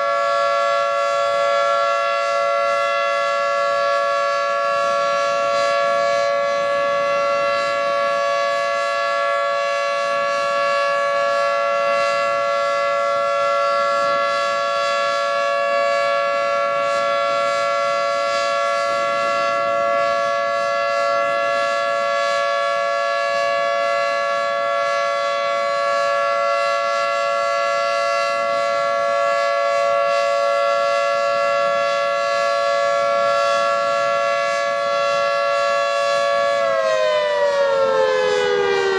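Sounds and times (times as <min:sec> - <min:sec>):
dual-tone warning siren: 0:00.0 - 0:38.9.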